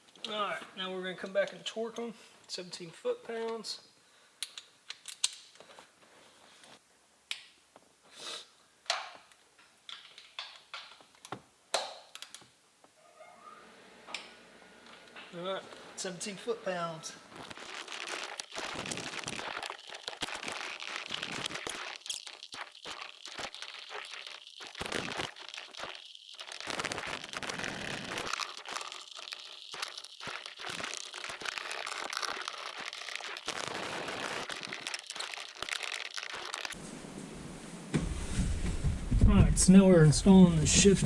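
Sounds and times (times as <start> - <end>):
parts crinkling and rustling: 17.0 - 36.8.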